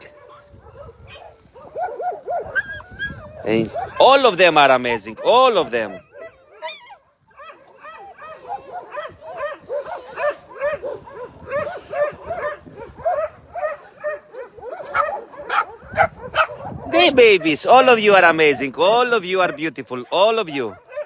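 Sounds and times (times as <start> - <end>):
puppies yipping and whining: 0.2 - 4.0, 5.8 - 16.8.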